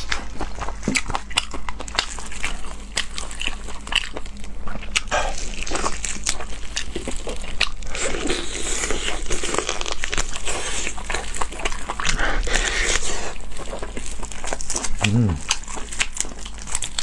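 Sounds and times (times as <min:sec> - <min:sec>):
chewing with crunches: 0:00.0 - 0:17.0.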